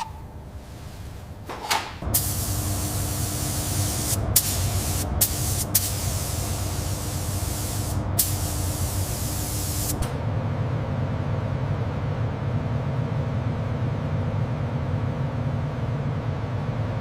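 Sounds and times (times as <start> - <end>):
steady low hum: 0.0 - 17.0
pressurised spray hissing: 2.1 - 10.0.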